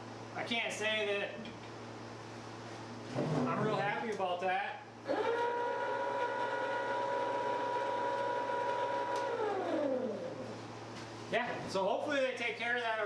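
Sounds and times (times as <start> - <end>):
motor winding down: 5.0 - 10.6
grain mill motor humming whine: 5.1 - 10.7.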